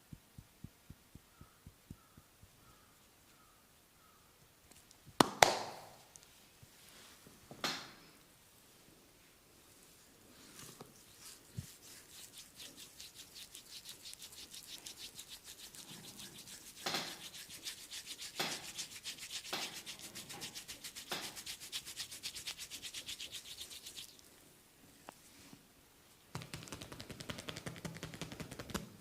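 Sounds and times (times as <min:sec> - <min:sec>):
slaps on skin: 0:05.2 - 0:05.9
hands rubbing oiled skin: 0:10.3 - 0:24.4, 0:26.4 - 0:28.8.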